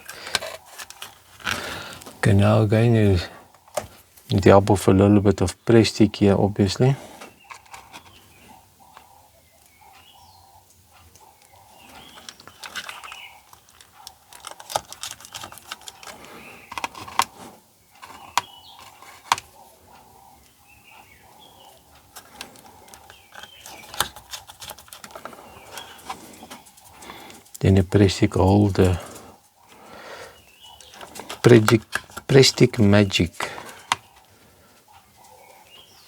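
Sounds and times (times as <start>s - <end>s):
clicks of plastic parts handled: 0.0s - 2.2s, 7.5s - 8.2s, 12.0s - 17.3s, 18.0s - 19.6s, 22.0s - 27.6s, 30.8s - 34.1s
faint bird chirps: 7.3s - 13.6s, 17.8s - 24.0s, 25.3s - 31.2s, 33.1s - 36.0s.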